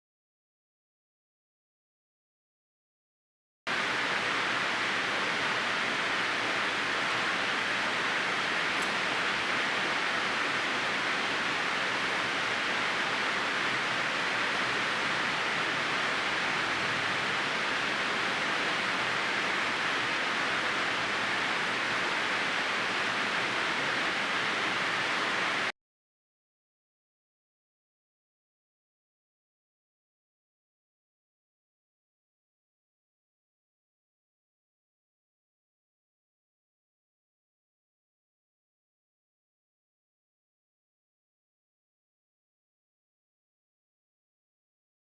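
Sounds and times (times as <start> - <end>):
steady static hiss: 3.7 - 25.7.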